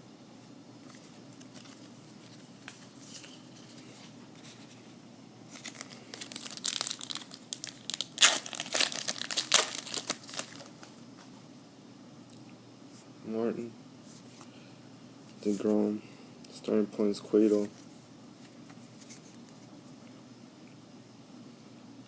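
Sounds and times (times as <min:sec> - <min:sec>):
wrapper tearing and crinkling: 0:05.5 - 0:10.8.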